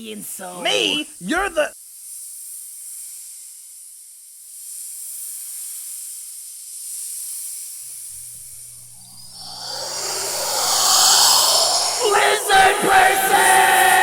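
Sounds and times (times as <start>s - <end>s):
high hissing noise: 8.2s - 14.0s.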